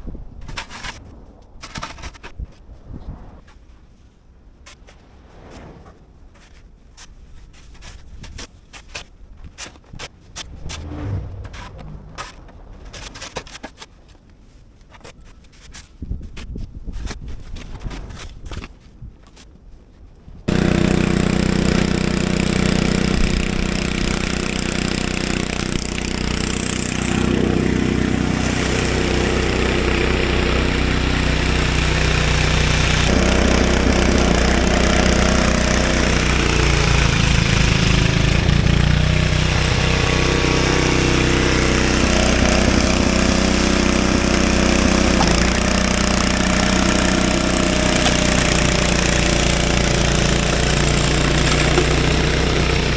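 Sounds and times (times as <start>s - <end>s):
snowblower engine running: 20.5s - 52.9s.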